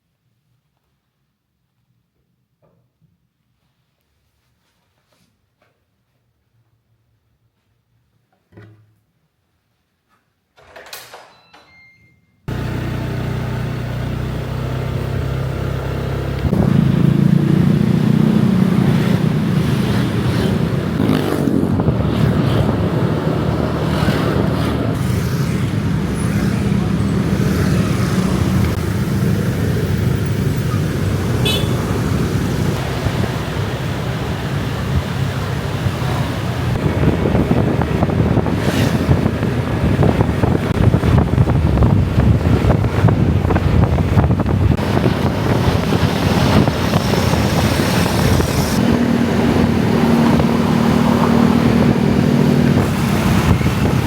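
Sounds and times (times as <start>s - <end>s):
road traffic rumble: 12.5s - 54.0s.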